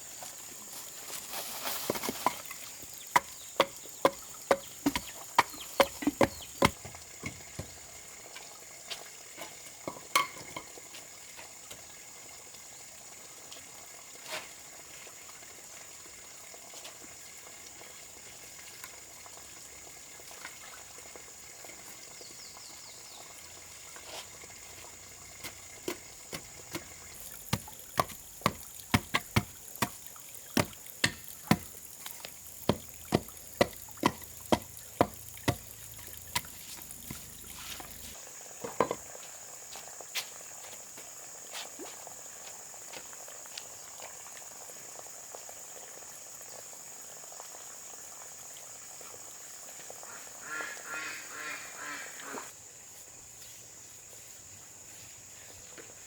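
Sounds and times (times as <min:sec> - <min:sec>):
sharp knocks: 0:03.2 - 0:07.8, 0:25.9 - 0:30.0, 0:30.6 - 0:31.8, 0:32.6 - 0:37.4
steady high hiss: 0:22.9 - 0:42.0.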